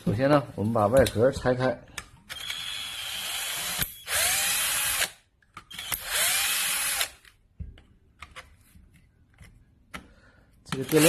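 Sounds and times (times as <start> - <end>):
electric screwdriver spinning: 2.3 - 7.3, 10.8 - 11.0.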